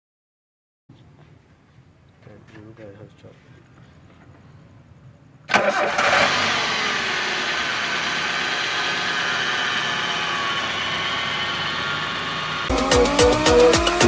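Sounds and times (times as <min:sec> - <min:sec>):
car engine idling: 0:05.5 - 0:14.0.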